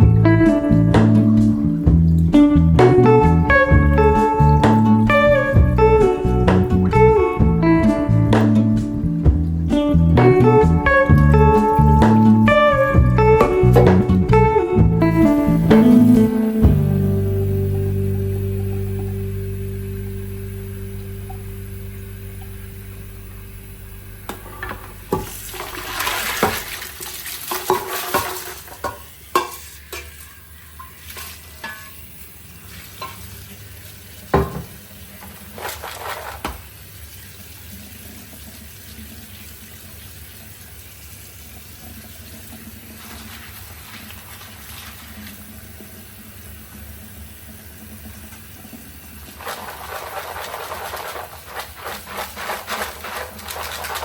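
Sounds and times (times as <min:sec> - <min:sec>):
low steady hum: 0:00.0 - 0:27.0.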